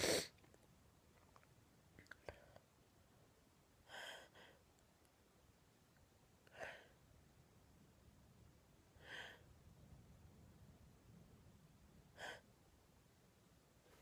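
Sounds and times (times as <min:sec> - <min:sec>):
woman breathing: 0:03.8 - 0:04.8, 0:06.4 - 0:07.2, 0:08.9 - 0:09.6, 0:12.1 - 0:12.6.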